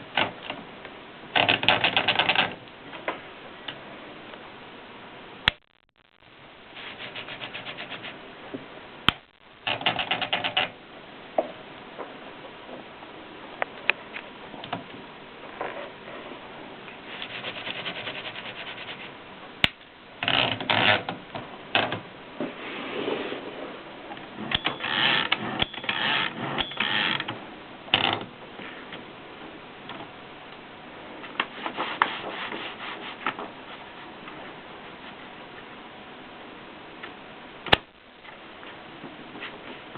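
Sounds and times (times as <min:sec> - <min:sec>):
sharp typewriter clacks: 0:01.4 - 0:02.6, 0:09.7 - 0:10.7
typewriter mechanism clicking: 0:01.4 - 0:02.6, 0:09.7 - 0:10.7
rubbing and sliding: 0:06.7 - 0:08.2, 0:17.0 - 0:19.2, 0:22.4 - 0:27.1, 0:31.2 - 0:35.2.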